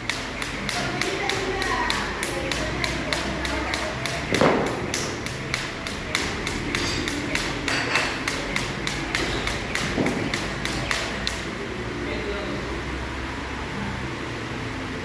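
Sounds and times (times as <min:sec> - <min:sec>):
rapid even tapping: 0:00.0 - 0:11.5
loud thud: 0:04.3 - 0:04.9.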